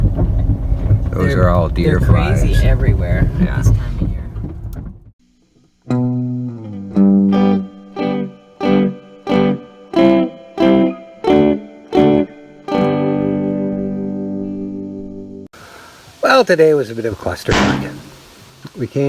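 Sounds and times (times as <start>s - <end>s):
guitar chords strummed: 5.9s - 15.4s.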